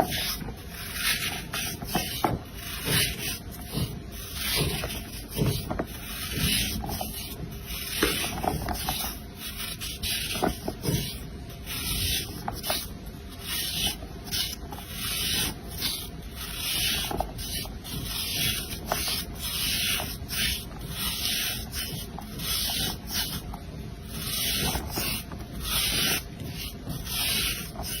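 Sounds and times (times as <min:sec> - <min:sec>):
kinetic sand scraped and cut: 0:00.0 - 0:11.0, 0:24.1 - 0:28.0.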